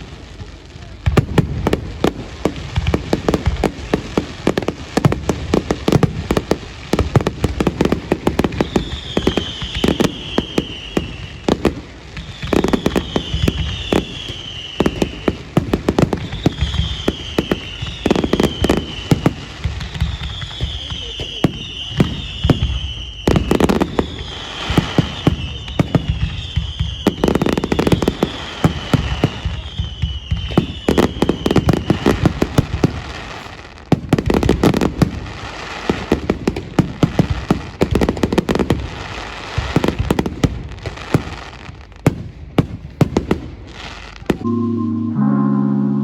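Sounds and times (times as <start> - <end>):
fireworks bangs and crackling: 0.0 - 44.4
falling whistle of fireworks: 5.9 - 33.5, 43.9 - 46.0
music: 44.4 - 46.0.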